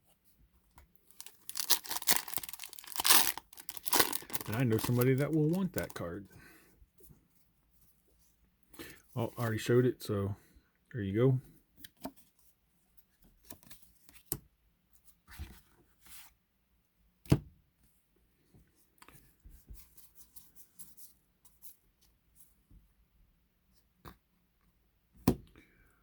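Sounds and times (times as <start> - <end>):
foil pack crinkling: 1.1 - 6.1.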